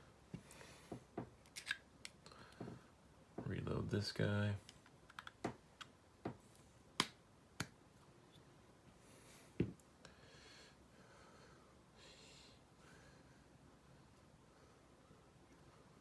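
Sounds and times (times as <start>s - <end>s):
small metal parts clicking: 1.4s - 1.8s.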